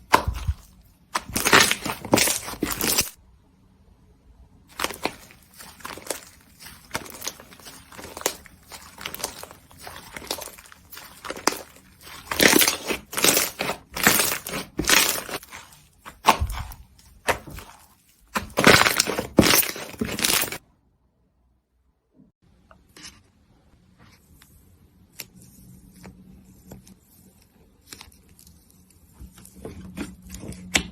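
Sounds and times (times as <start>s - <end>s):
slime squelching and popping: 0.0s - 3.2s, 4.7s - 20.6s.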